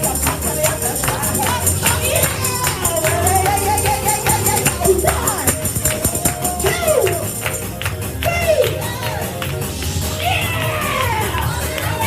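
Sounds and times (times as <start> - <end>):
voices calling out: 0.0 - 9.4
tambourine shaken: 0.0 - 9.6
deep bass: 0.0 - 12.0
gospel church music: 0.0 - 12.0.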